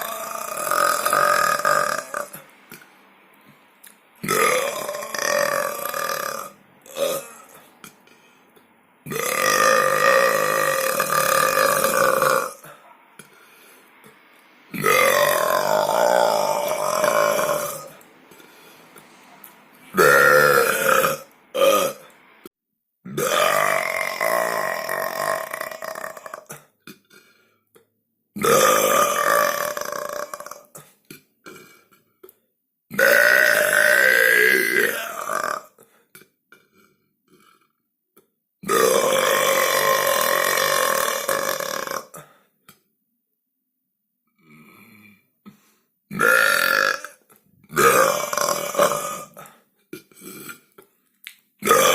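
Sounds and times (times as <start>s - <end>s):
person belching: 0.0s - 2.8s, 4.2s - 8.0s, 9.0s - 12.7s, 14.7s - 18.0s, 19.9s - 22.1s, 23.0s - 27.3s, 28.4s - 32.0s, 32.9s - 35.8s, 38.6s - 42.2s, 46.1s - 50.8s, 51.6s - 51.9s.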